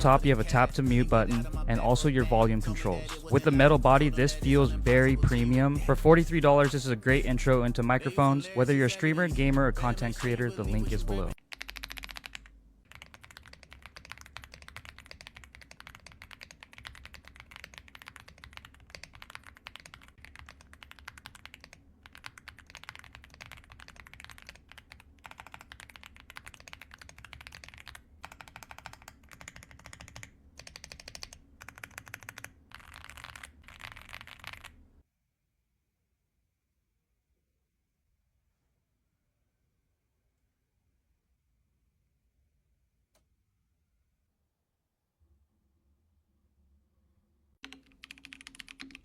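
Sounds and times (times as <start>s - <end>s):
fast typing on mechanical keyboard: 11.4s - 34.8s, 47.6s - 49.0s.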